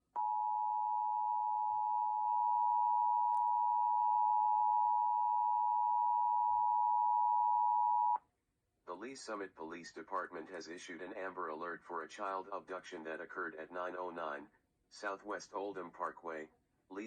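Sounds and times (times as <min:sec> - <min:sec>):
two-tone emergency alert alarm: 0:00.2 - 0:08.2.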